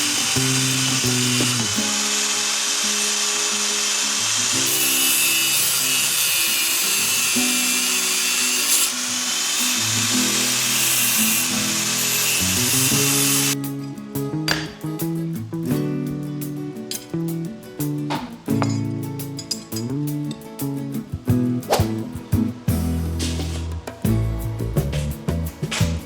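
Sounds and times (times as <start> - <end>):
power tool running: 0.0 - 13.6.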